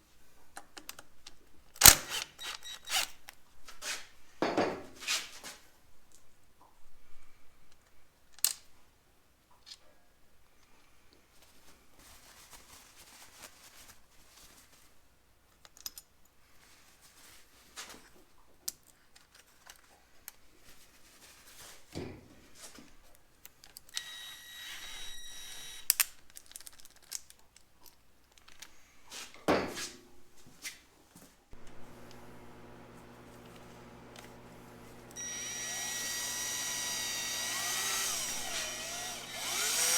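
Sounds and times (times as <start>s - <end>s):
hand tools and metal parts clinking: 35.1s - 39.9s.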